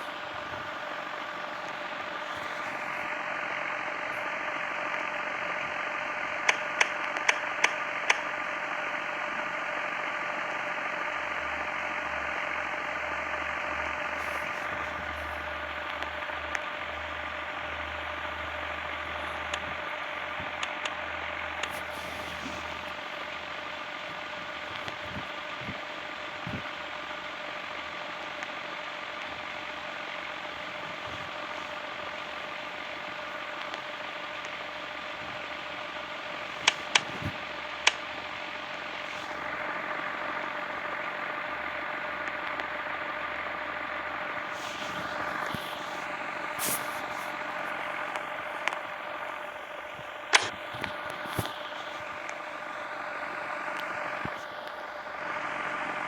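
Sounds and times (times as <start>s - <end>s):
ceiling fan motor hum: 0.0s - 56.0s
sharp clicks: 6.4s - 8.4s, 19.4s - 21.0s, 36.6s - 38.1s, 50.3s - 52.4s.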